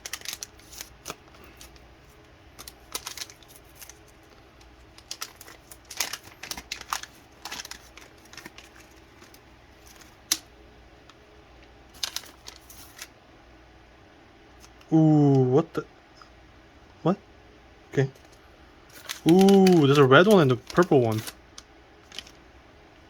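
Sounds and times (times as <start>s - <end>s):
packaging crinkling and rustling: 0.0s - 11.2s, 11.9s - 13.1s, 18.2s - 22.4s.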